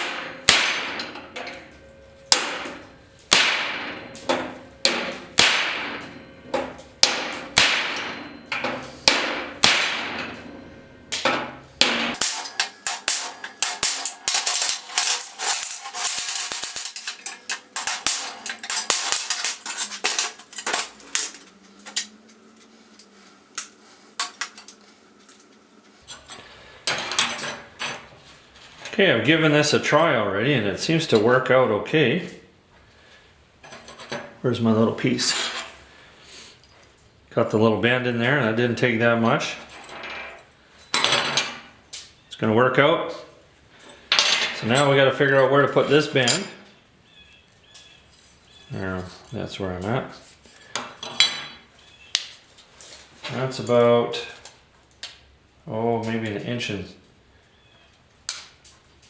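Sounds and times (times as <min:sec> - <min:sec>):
hammer striking steel: 0:00.0 - 0:22.1.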